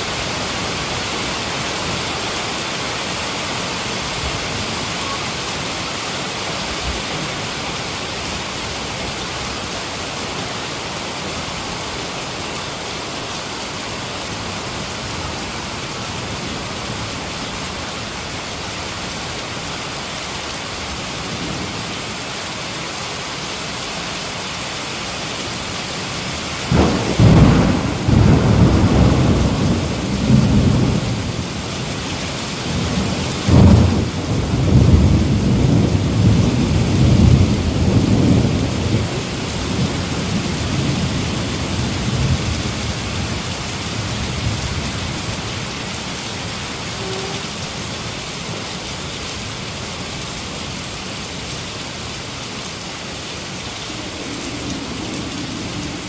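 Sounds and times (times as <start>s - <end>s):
heavy rain hissing: 0.0s - 56.0s
thunder rumble: 26.7s - 31.7s, 32.6s - 45.4s, 53.5s - 56.0s.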